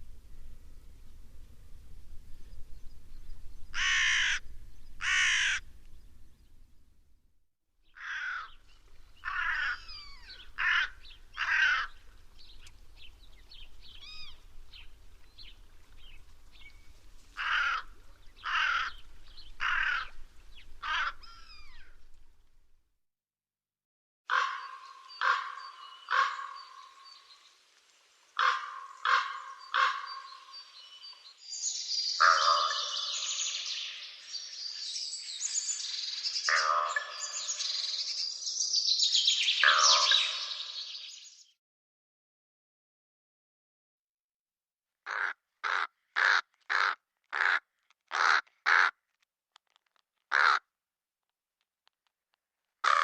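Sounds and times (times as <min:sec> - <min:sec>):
crow cawing: 0:03.8 - 0:04.4, 0:05.0 - 0:05.6, 0:08.0 - 0:08.6, 0:09.2 - 0:12.0, 0:17.4 - 0:19.0, 0:19.6 - 0:20.2, 0:20.8 - 0:21.9, 0:24.3 - 0:26.7, 0:28.4 - 0:30.5, 0:32.2 - 0:33.2, 0:39.6 - 0:40.5, 0:45.1 - 0:49.0, 0:50.3 - 0:50.7.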